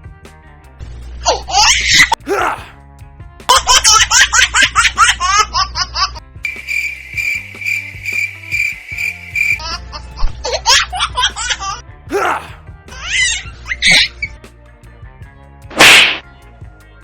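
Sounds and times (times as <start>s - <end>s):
background music: 0.0s - 17.0s
person laughing: 1.3s - 2.7s, 3.5s - 6.2s, 9.6s - 14.3s
drawn-out gliding calls: 6.5s - 9.9s.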